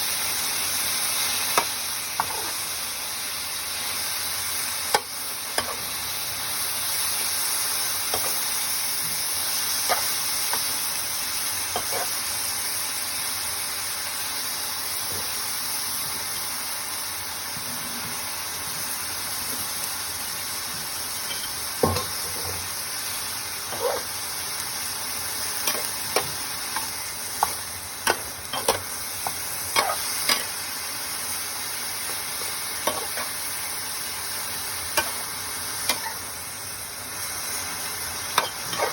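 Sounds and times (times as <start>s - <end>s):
food sizzling in a pan: 0.0s - 38.9s
utensil scraping a pan: 23.7s - 24.1s, 25.6s - 30.5s, 38.4s - 38.9s.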